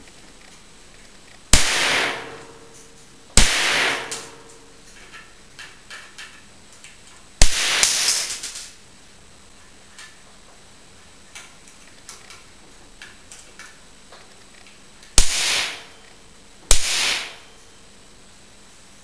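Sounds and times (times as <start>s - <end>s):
sharp pops with short hiss: 1.5s - 2.8s, 3.4s - 4.6s, 7.4s - 8.8s, 15.2s - 16.0s, 16.7s - 17.5s.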